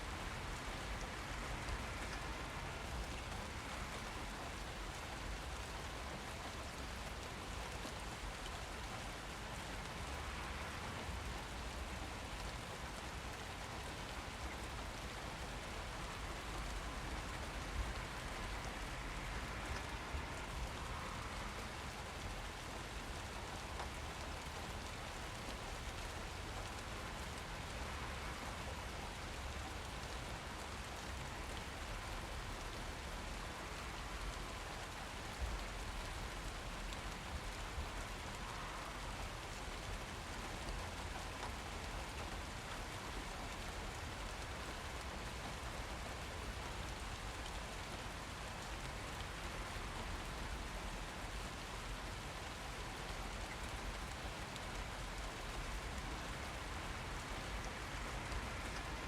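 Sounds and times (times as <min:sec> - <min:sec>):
rain pattering: 0:00.0 - 0:59.0.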